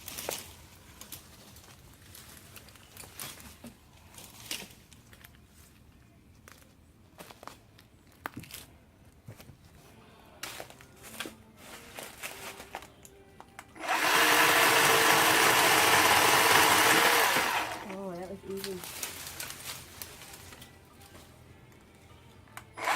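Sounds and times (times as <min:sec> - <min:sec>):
electric chainsaw motor running: 0:13.8 - 0:18.0.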